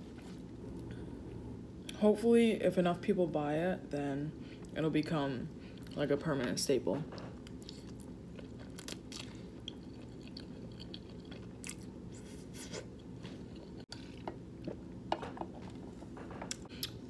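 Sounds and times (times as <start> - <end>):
low steady hum: 0.0 - 17.0
person chewing food: 7.4 - 14.9, 16.4 - 17.0.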